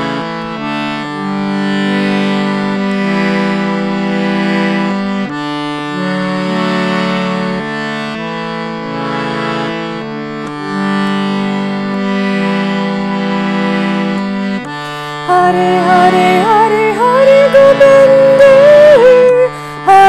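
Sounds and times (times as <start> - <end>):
instrumental music of held chords: 0.0 - 20.0.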